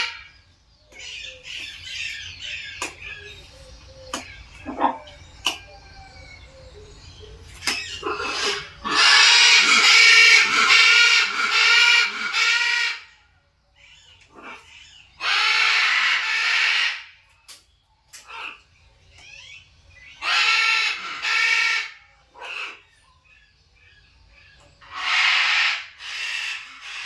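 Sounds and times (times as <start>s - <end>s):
macaw squawking harshly: 7.6s - 13.1s, 14.3s - 17.2s, 20.2s - 22.8s, 24.8s - 27.0s.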